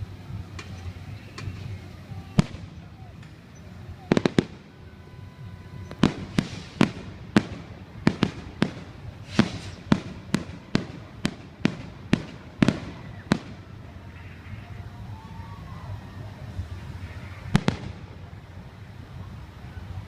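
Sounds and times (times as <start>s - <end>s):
fireworks banging: 0.0s - 15.1s, 16.4s - 20.0s
low background rumble: 0.0s - 20.0s.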